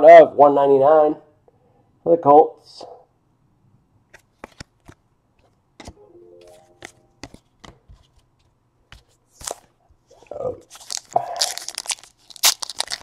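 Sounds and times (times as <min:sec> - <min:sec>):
cards tapping and clicking: 0:04.1 - 0:05.0, 0:06.7 - 0:09.6.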